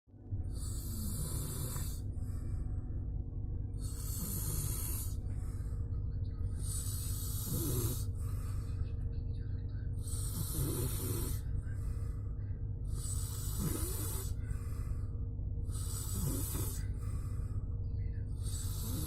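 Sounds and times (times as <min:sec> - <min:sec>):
steady low hum: 0:00.1 - 0:19.0
person snoring: 0:00.5 - 0:02.4, 0:03.8 - 0:05.4, 0:06.5 - 0:08.6, 0:10.0 - 0:11.8, 0:12.9 - 0:14.9, 0:15.6 - 0:17.2, 0:18.3 - 0:19.0.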